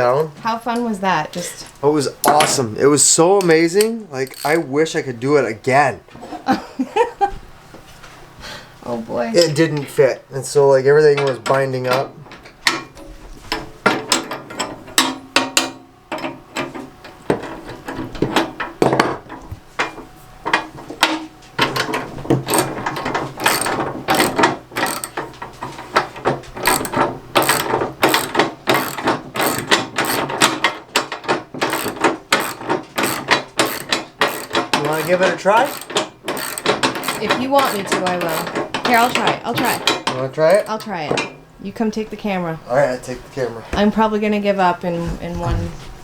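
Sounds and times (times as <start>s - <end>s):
ratchet wrench clicking: 3.4s - 4.7s, 22.5s - 22.8s, 23.4s - 25.2s, 26.6s - 30.6s, 31.6s - 40.8s.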